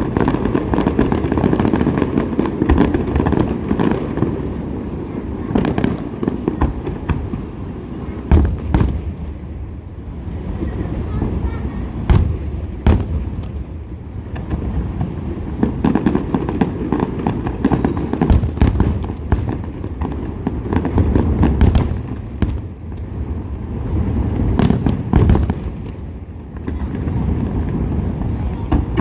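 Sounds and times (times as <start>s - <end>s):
fireworks bangs and crackles: 0.0s - 29.0s
echoing booms: 8.2s - 9.8s, 12.0s - 29.0s.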